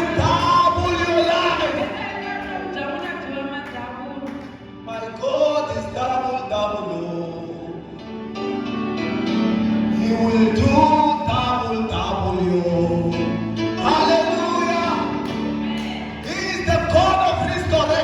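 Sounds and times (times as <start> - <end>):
person singing gospel: 0.0 - 8.2, 9.7 - 18.0
instrumental accompaniment: 8.0 - 18.0.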